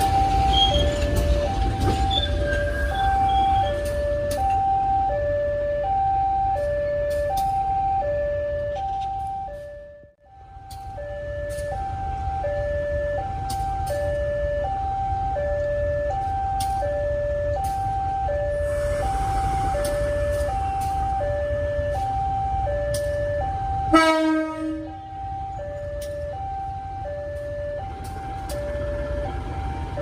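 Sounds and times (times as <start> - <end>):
loud horn blast: 23.9 - 25.0.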